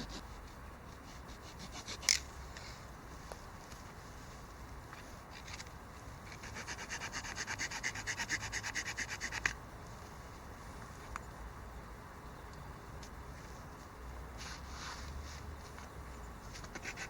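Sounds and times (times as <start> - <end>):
small saw cutting through branch: 1.0 - 2.2, 6.3 - 9.5, 16.7 - 17.0.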